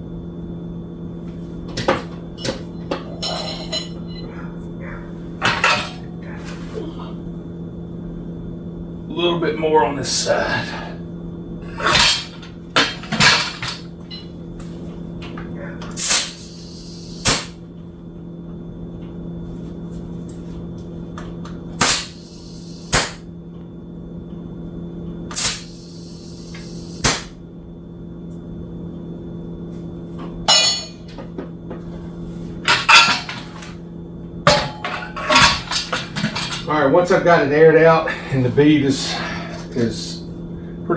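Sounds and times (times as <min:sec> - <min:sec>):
steady low hum: 0:00.0 - 0:40.9
tool clatter: 0:05.4 - 0:06.1, 0:11.8 - 0:14.3, 0:30.5 - 0:31.2, 0:32.6 - 0:33.7, 0:34.5 - 0:36.7
compressed air hissing: 0:15.9 - 0:17.6, 0:21.8 - 0:23.2, 0:25.3 - 0:27.3.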